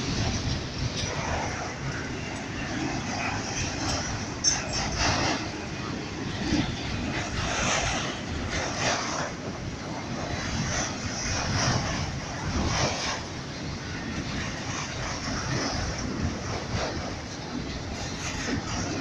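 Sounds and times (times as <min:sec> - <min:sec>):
freight train rumbling past: 0:00.0 - 0:19.0.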